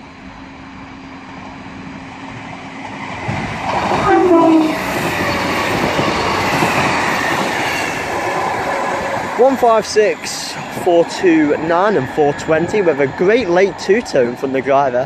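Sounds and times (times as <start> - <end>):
train passing rumble: 0.0 - 15.0
two-tone train horn: 3.9 - 5.0.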